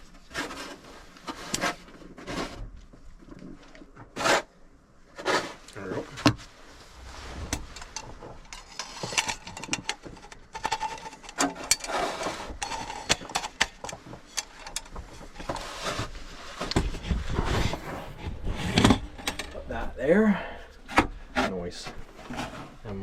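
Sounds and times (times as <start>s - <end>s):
low rumble of movement: 6.4s - 10.6s.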